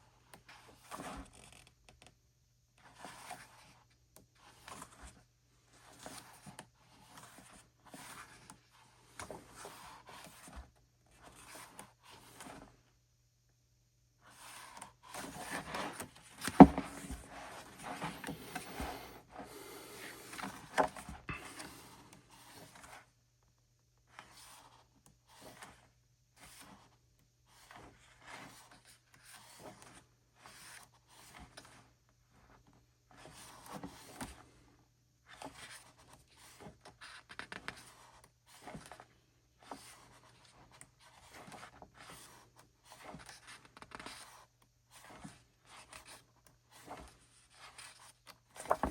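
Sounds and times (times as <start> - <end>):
pages rustling and turning: 5.8 - 10.6, 14.3 - 23.0, 35.4 - 48.9.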